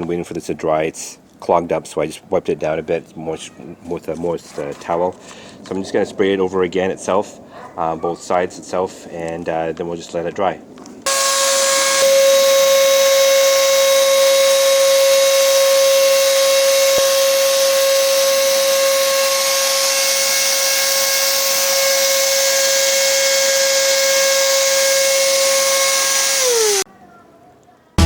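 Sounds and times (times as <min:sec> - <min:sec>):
paint sprayer whining: 0:11.1 - 0:26.9.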